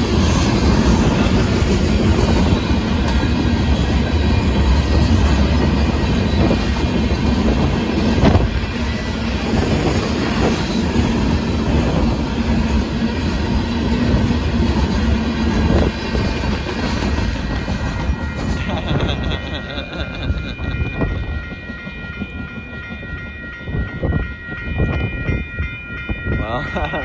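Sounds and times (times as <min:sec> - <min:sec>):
train wheels clacking over rails: 0:00.0 - 0:26.1.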